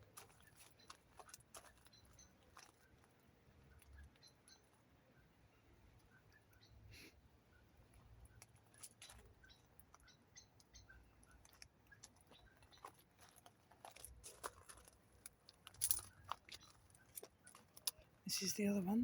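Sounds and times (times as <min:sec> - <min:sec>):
faint footsteps crunching: 0:00.0 - 0:03.8, 0:11.2 - 0:18.4.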